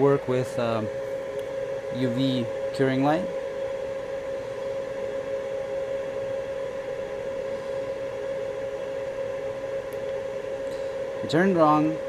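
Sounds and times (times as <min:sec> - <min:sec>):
steady machine hum: 0:00.0 - 0:12.0.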